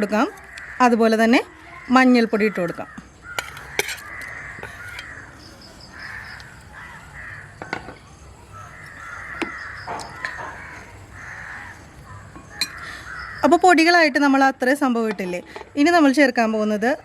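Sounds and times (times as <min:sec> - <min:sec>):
crows cawing: 0:00.1 - 0:14.0.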